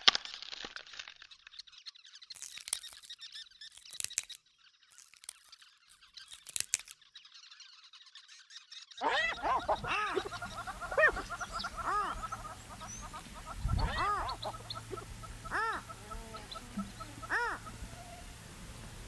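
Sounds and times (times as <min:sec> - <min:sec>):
faint fast bird chirping: 0:01.4 - 0:19.0
loud bird calls rising and falling: 0:09.0 - 0:19.0.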